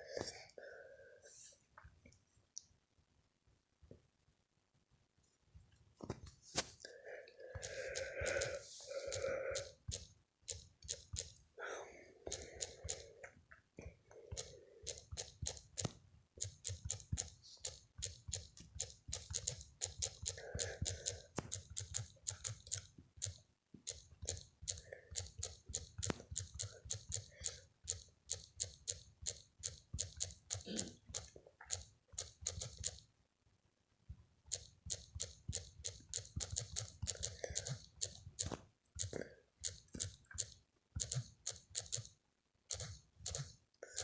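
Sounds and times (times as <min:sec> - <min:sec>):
rapid crunching clicks: 0:07.6 - 0:11.5, 0:12.2 - 0:13.1, 0:14.3 - 0:33.1, 0:34.5 - 0:44.0.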